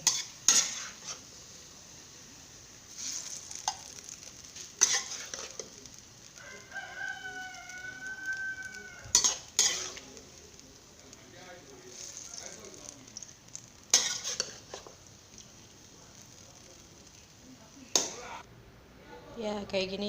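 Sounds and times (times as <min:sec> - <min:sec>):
utensils scraping a pan: 0:00.0 - 0:01.3, 0:02.9 - 0:04.0, 0:04.6 - 0:06.0, 0:09.1 - 0:10.2, 0:13.9 - 0:15.0
rooster crowing: 0:06.3 - 0:09.2.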